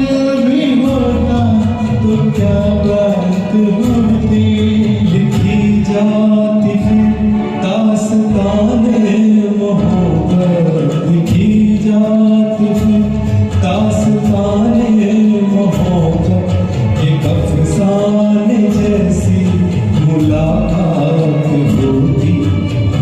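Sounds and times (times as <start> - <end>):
man singing karaoke: 0.0 - 23.0.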